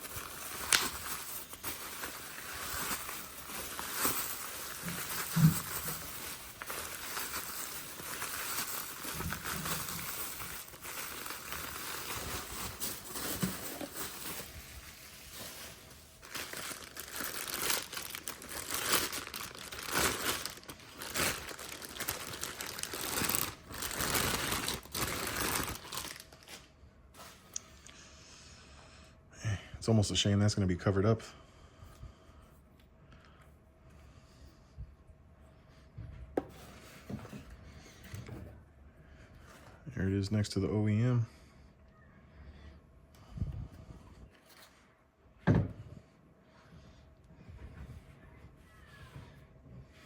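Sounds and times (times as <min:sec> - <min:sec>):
plastic packaging crinkling and tearing: 0:00.0 - 0:27.6.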